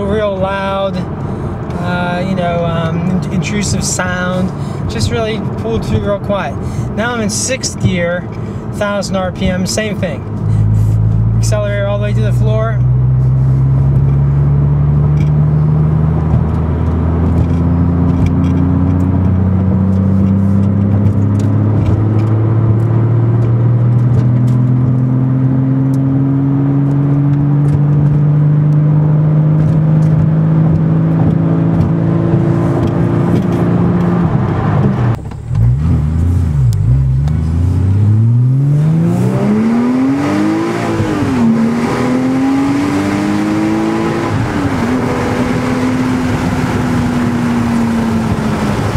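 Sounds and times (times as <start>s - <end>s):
car engine accelerating: 0.0s - 48.9s.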